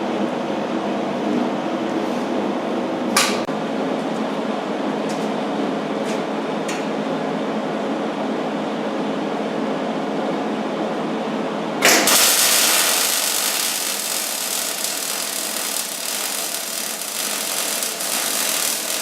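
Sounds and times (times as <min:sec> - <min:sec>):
welder humming: 0:11.8 - 0:19.0.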